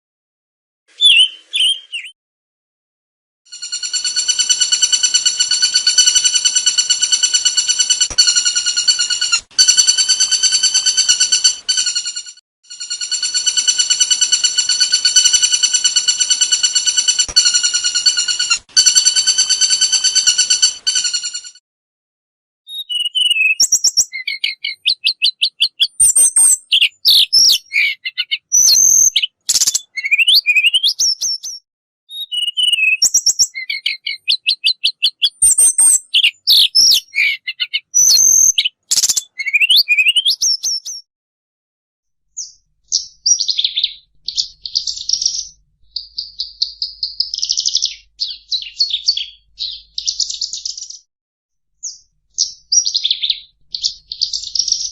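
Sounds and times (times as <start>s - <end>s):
songbird whistling: 0.9s - 2.2s, 22.7s - 31.5s, 32.1s - 41.0s
buzzy chattering trills: 3.6s - 21.6s.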